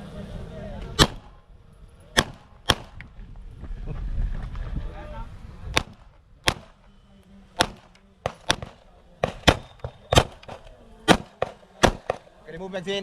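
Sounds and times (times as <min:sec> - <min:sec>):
pistol shots: 0:01.0 - 0:01.4, 0:02.2 - 0:03.1, 0:05.7 - 0:06.9, 0:07.6 - 0:12.4.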